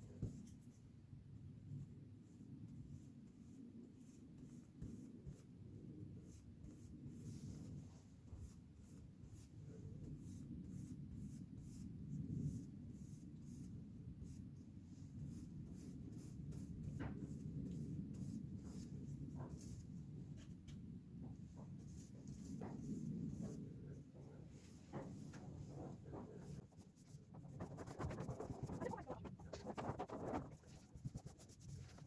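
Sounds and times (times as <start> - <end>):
paintbrush strokes scratching: 2.2 - 20.6, 24.5 - 32.0.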